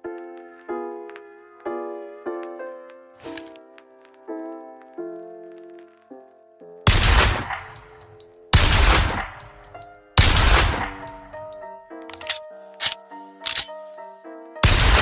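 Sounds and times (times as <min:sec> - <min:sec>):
background music: 0:00.0 - 0:15.0
sharp gunshot cracks: 0:06.9 - 0:11.4, 0:14.6 - 0:15.0
pistol shots with echo: 0:06.9 - 0:11.5, 0:14.6 - 0:15.0.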